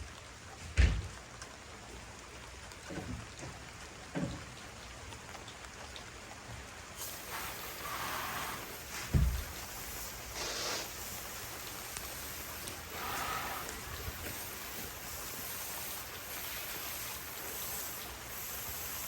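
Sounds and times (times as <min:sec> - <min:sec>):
light rain falling: 0:00.0 - 0:19.0
dull thumps: 0:08.9 - 0:09.9.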